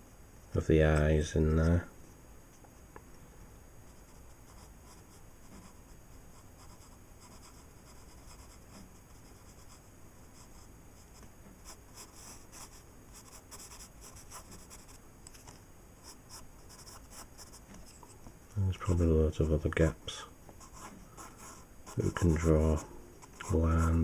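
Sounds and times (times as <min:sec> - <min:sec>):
pencil scratching on paper: 0:04.0 - 0:10.6, 0:11.6 - 0:15.0, 0:16.0 - 0:18.1, 0:20.6 - 0:24.0.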